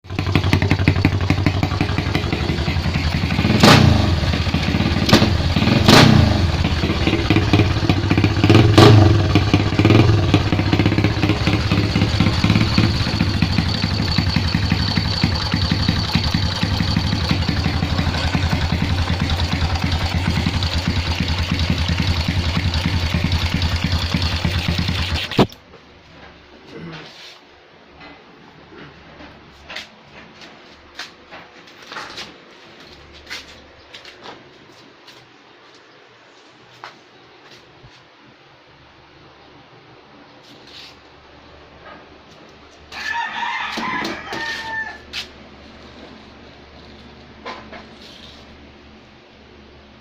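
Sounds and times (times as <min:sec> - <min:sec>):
motorcycle engine idling: 0:00.1 - 0:25.5.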